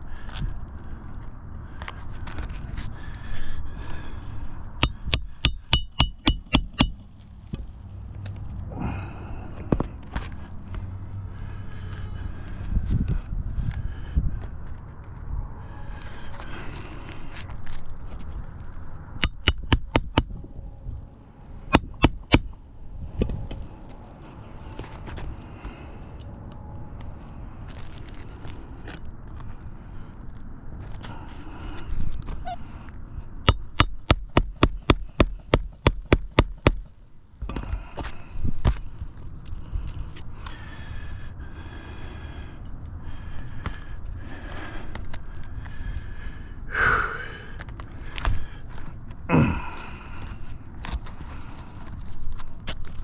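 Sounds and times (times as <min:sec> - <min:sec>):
sharp ringing clicks: 0:04.8 - 0:07.0, 0:19.2 - 0:20.4, 0:21.7 - 0:22.6
sharp metallic taps: 0:04.8 - 0:07.1, 0:19.2 - 0:20.4, 0:21.7 - 0:22.6, 0:33.4 - 0:37.6.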